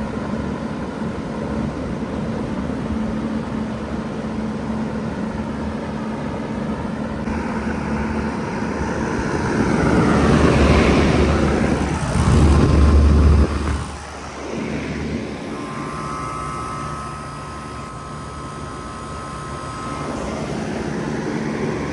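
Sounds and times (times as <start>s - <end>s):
heat pump humming: 0.0s - 21.9s
loud rushing sound: 7.3s - 15.7s.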